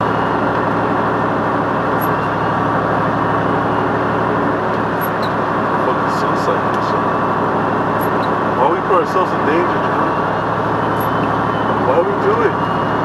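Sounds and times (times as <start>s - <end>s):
diesel engine drone: 0.0s - 13.0s
road noise inside cab: 0.0s - 13.0s.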